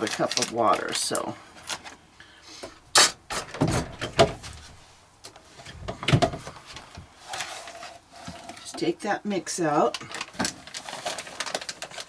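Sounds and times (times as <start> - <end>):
rubbing and shuffling: 3.0 - 8.6.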